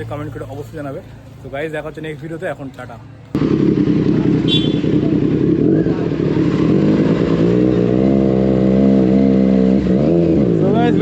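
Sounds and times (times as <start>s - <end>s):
wind and road noise: 0.0s - 11.0s
motorcycle engine running: 3.4s - 11.0s.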